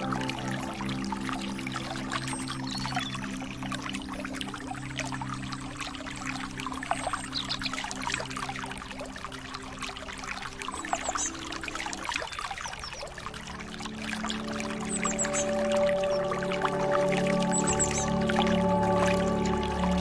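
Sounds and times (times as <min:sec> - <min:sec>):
stream trickling and splashing: 0:00.0 - 0:20.0
bird chirps: 0:14.9 - 0:16.3, 0:17.5 - 0:18.2.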